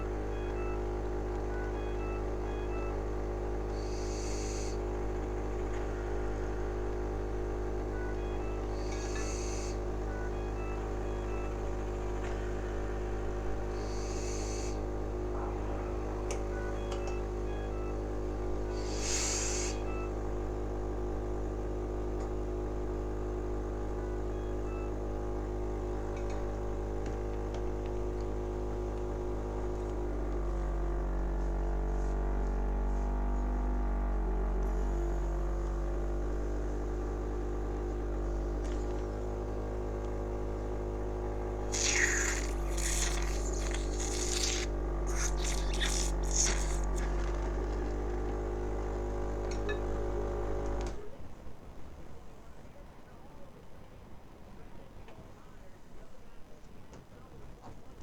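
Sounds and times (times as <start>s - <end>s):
machine motor hum: 0.0s - 24.4s, 33.8s - 51.0s
short hissy bursts and clicks: 18.8s - 19.8s, 41.7s - 47.5s.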